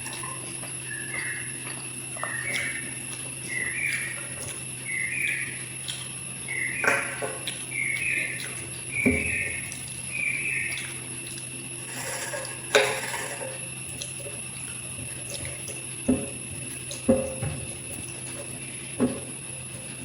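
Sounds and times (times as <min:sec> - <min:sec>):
clinks against a dish: 0:12.7 - 0:13.3.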